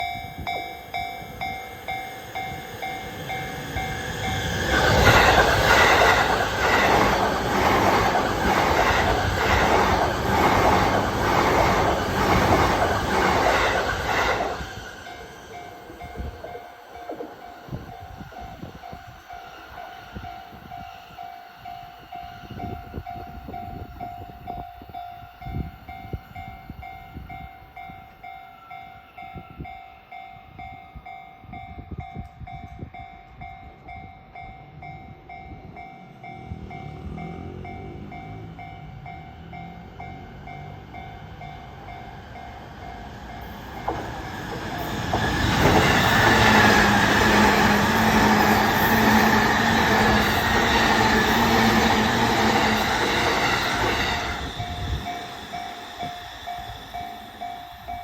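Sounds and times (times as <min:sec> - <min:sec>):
train wheels clattering: 0:00.0 - 0:18.4, 0:43.3 - 0:58.0
level crossing warning bell: 0:00.0 - 0:44.1, 0:45.6 - 0:58.0
electric train passing: 0:00.0 - 0:58.0.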